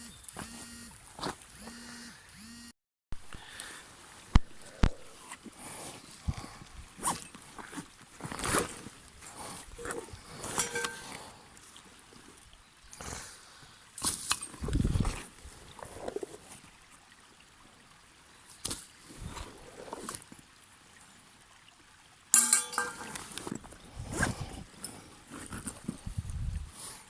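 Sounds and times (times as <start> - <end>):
babbling stream: 3.3 - 27.0
cookware knocks and rustles: 9.8 - 11.1, 22.4 - 23.3
metallic clink: 9.8 - 11.2, 22.4 - 23.3.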